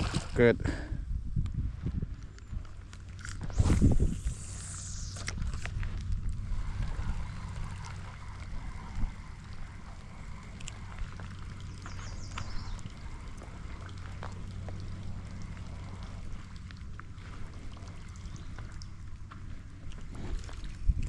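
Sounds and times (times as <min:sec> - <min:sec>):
low rumble: 0:00.0 - 0:21.0.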